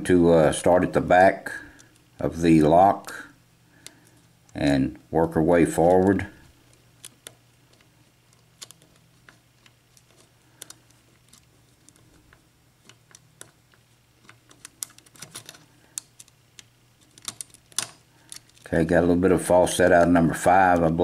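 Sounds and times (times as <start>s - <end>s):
lock pick clicking: 14.2s - 18.6s.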